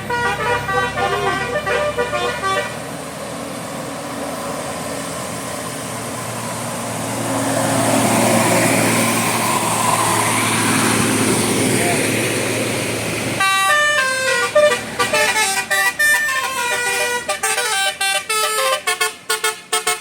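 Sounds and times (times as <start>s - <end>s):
multi-tone air horn tune: 0.0s - 2.8s, 13.4s - 20.0s
steady vehicle noise: 0.0s - 20.0s.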